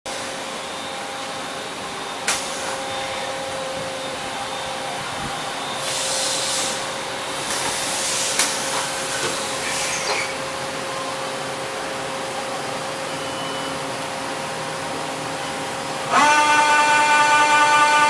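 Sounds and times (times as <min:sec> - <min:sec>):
lathe machine hum with whine: 0:00.1 - 0:18.0
louder hissing: 0:02.3 - 0:10.4.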